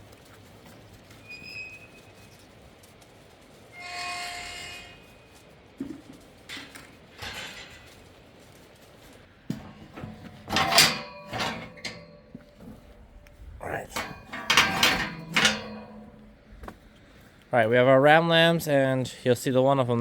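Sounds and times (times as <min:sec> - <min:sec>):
clattering with metallic ringing: 0:06.6 - 0:08.1, 0:09.5 - 0:13.3, 0:13.9 - 0:17.0.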